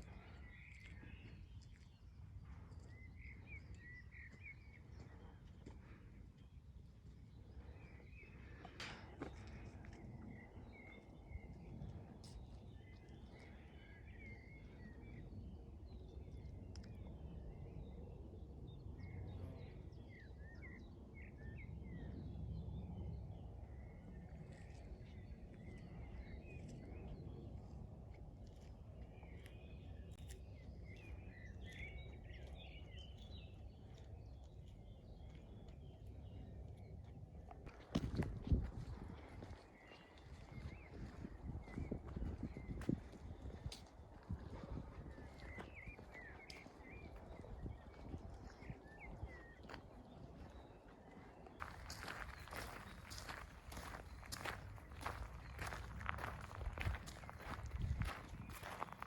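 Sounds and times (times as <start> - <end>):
small birds chirping: 28.5 - 37.0, 39.4 - 59.0.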